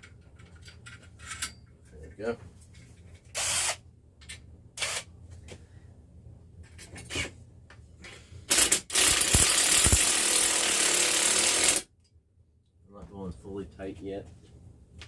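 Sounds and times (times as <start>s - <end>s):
screwdriver ratcheting into wall: 8.5s - 11.8s.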